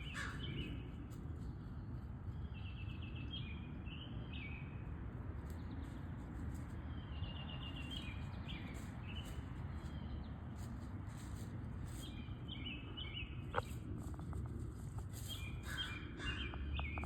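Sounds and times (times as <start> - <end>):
low outdoor rumble: 0.0 - 17.0
small songbirds chirping: 0.0 - 17.0.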